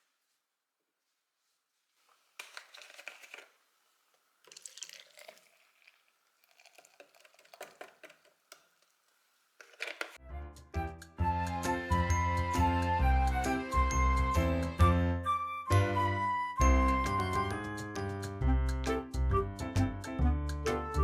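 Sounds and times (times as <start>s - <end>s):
crinkling and rustling: 0.0s - 10.2s.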